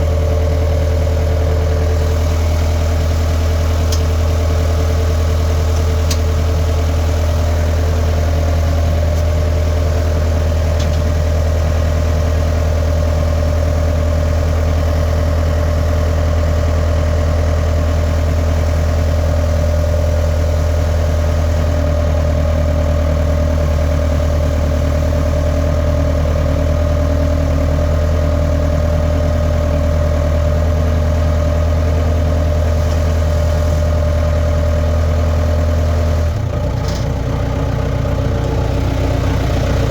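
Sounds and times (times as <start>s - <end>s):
skid steer engine running: 0.0s - 39.9s.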